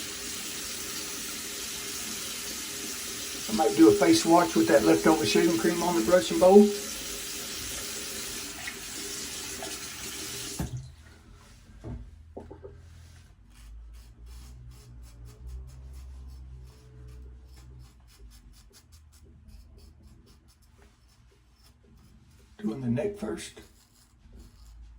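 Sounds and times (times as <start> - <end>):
sink tap running: 0.0 - 10.9
faint knocks and handling: 11.8 - 12.9.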